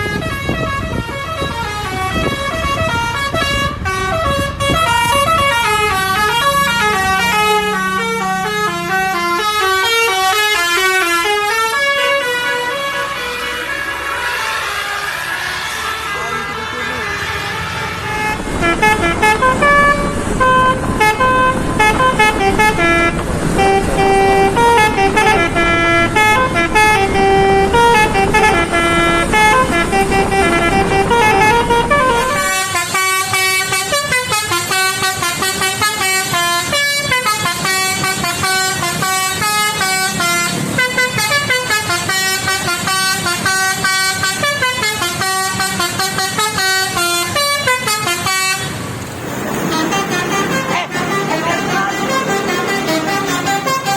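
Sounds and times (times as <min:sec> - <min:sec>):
musical bus horn playing a tune: 0:00.0 - 0:49.0, 0:49.6 - 0:53.9
low engine rumble: 0:16.1 - 0:32.8.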